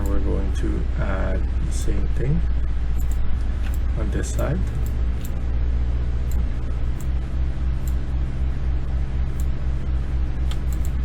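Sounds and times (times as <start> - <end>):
low electrical hum: 0.0 - 11.0
computer mouse clicks: 10.4 - 11.0.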